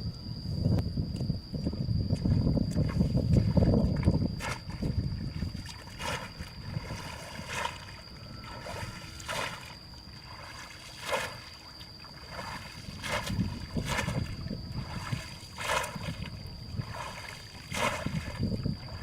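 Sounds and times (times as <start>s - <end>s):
steady high tone: 0.0s - 19.0s
water splashing rhythmically: 4.4s - 19.0s.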